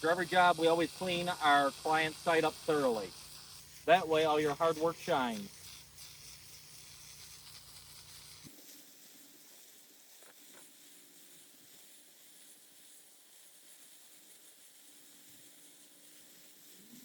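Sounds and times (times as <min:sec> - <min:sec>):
faint steady hiss: 0:00.0 - 0:17.0.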